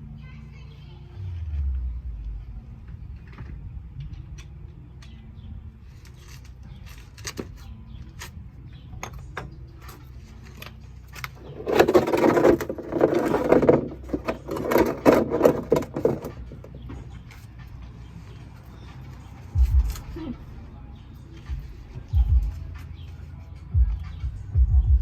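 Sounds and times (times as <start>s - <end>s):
hand tools clicking and knocking: 6.0s - 8.4s, 9.0s - 17.8s
rapid metal rattling: 9.0s - 20.2s.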